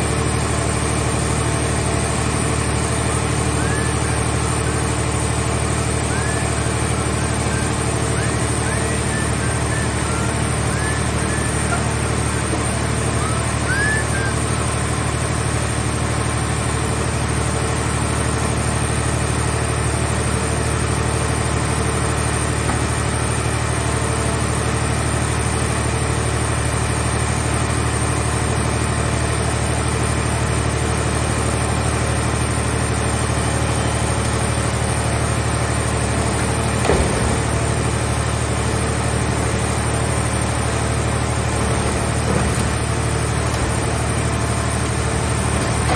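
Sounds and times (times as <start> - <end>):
engine droning: 0.0 - 45.9
brief knock: 36.8 - 37.4.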